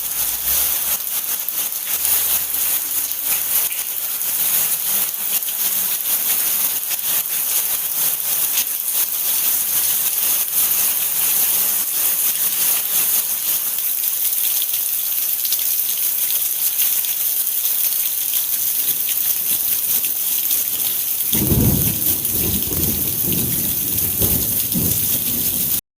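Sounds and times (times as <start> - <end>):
steady rain falling: 0.0 - 25.8
rolling thunder: 21.4 - 25.8.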